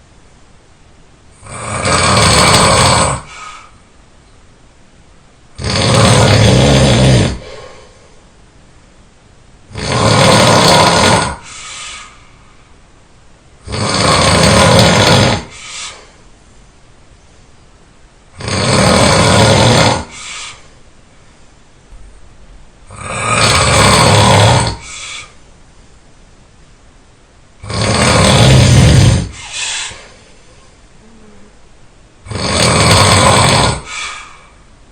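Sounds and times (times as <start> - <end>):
person snoring loudly: 1.3 - 3.7, 5.6 - 7.8, 9.7 - 12.1, 13.6 - 16.2, 18.3 - 20.7, 22.9 - 25.4, 27.6 - 30.2, 32.2 - 34.6.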